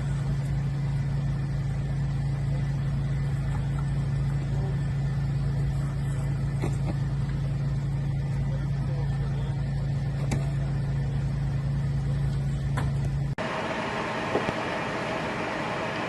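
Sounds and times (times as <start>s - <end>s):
engine idling: 0.0s - 16.0s.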